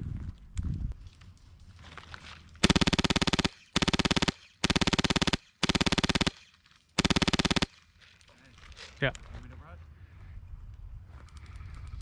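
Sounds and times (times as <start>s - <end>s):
airsoft gun firing bursts: 2.6s - 7.8s.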